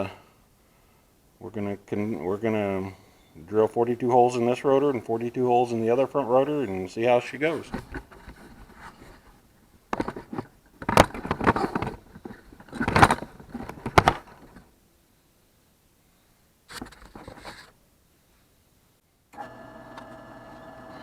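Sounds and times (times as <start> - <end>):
metal parts clattering and scraping: 10.0 - 14.6.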